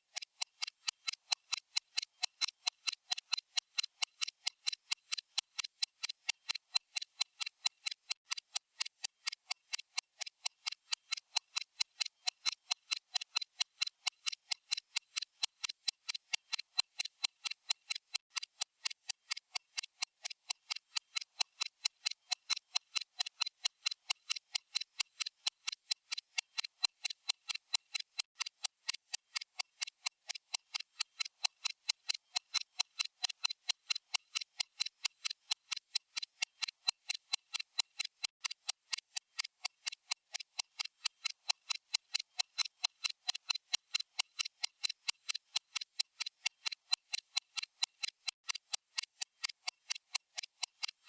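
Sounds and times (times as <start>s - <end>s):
stopwatch ticking: 0.0s - 51.0s.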